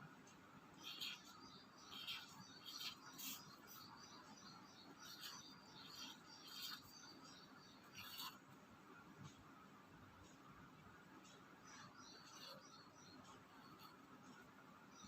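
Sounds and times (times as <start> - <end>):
pen scratching on paper: 0.8 - 3.9, 5.0 - 8.4, 12.1 - 12.8.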